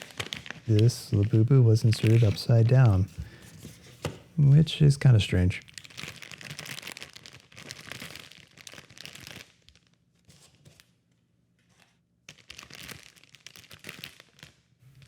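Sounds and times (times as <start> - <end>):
plastic packaging crinkling: 0.0 - 11.0, 11.6 - 15.0.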